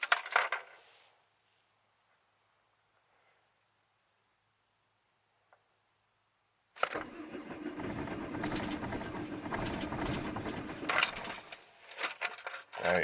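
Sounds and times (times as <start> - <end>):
diesel engine cranking and starting: 6.8 - 11.7.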